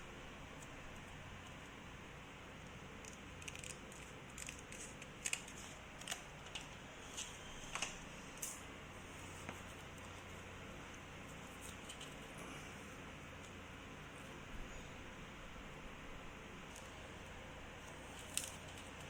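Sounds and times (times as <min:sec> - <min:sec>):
tape crinkling: 0:03.0 - 0:08.0, 0:17.9 - 0:19.0.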